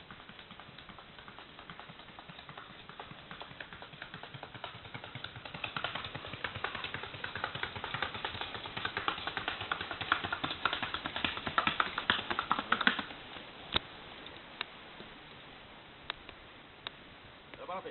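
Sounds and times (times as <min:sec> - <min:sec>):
rapid horse hoofbeats: 0:00.0 - 0:13.2.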